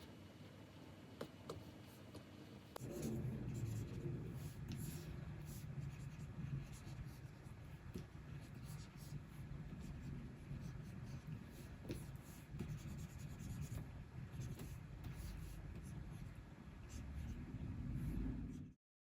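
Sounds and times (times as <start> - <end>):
stylus scratching and tapping on screen: 1.2 - 18.8
low rumble: 2.8 - 7.8, 14.9 - 18.8.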